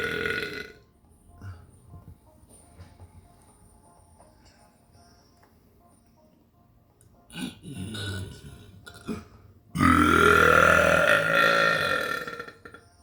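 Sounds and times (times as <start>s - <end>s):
person burping: 0.0s - 0.8s, 7.3s - 12.8s.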